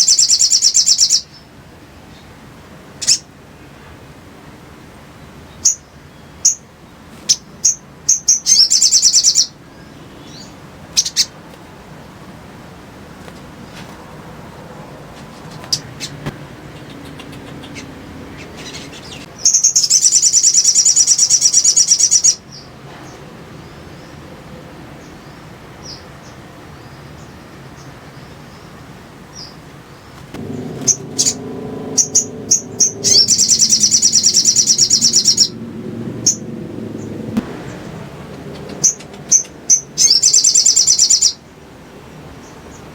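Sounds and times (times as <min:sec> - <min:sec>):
bird high-pitched trills: 0:16.8 - 0:22.4, 0:30.8 - 0:35.6, 0:38.7 - 0:41.4.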